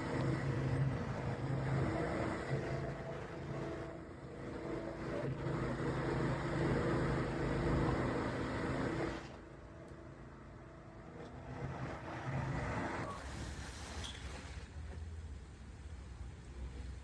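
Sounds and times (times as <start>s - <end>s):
vehicle engine hum: 0.0s - 13.3s
road noise: 0.0s - 17.0s.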